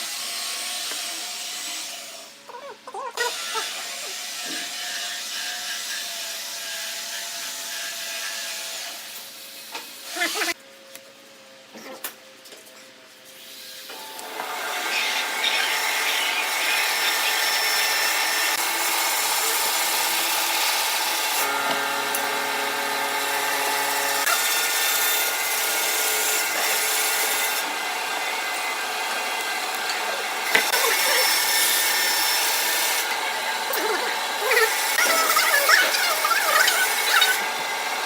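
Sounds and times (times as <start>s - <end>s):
lathe motor hum: 14.0s - 38.0s
lathe tool scraping wood: 14.0s - 38.0s.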